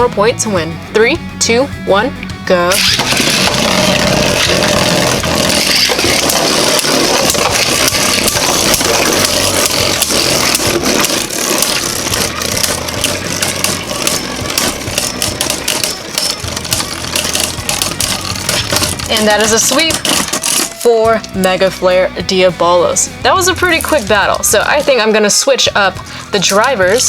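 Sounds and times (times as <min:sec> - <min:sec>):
spinning tops clacking together: 0:02.7 - 0:21.4
spinning tops whirring: 0:02.7 - 0:27.0.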